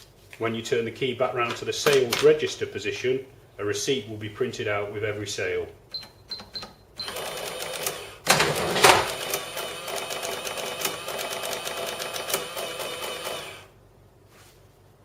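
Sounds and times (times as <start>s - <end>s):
cash register clatter: 7.0s - 13.4s
receipt printer ticking: 9.0s - 13.5s.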